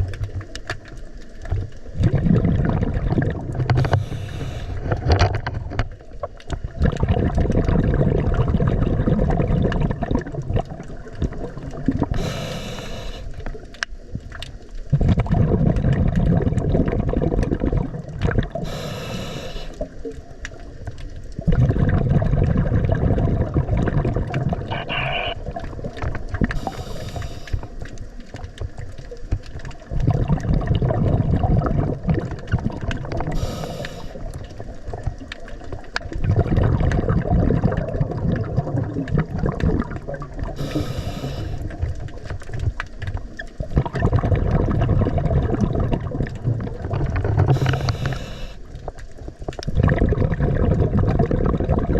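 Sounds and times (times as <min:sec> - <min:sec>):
exhaled bubbles rumbling: 0:00.0 - 0:51.9
regulator hissing inhale: 0:03.8 - 0:05.0, 0:12.2 - 0:13.5, 0:18.6 - 0:20.0, 0:24.7 - 0:25.4, 0:26.6 - 0:27.8, 0:33.3 - 0:34.4, 0:40.6 - 0:41.8, 0:47.5 - 0:48.7.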